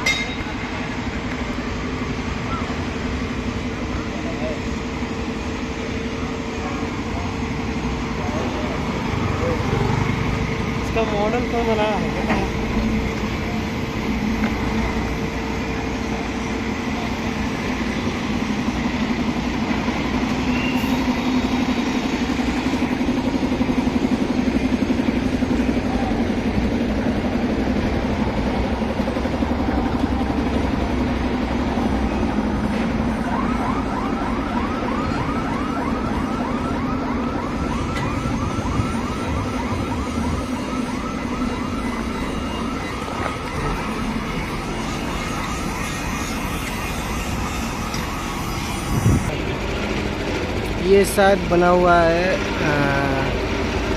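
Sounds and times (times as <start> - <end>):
traffic noise: 0.0 - 53.9
warbling alarm: 0.0 - 53.9.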